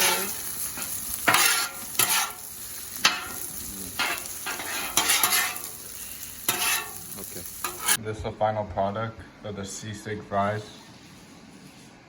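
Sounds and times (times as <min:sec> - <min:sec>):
food sizzling on hot surface: 0:00.0 - 0:08.0
spatula scraping: 0:00.0 - 0:08.0.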